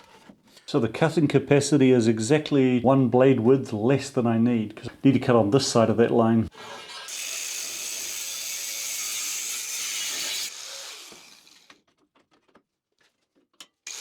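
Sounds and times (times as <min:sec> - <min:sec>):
bandsaw cutting steel: 0:06.5 - 0:11.8.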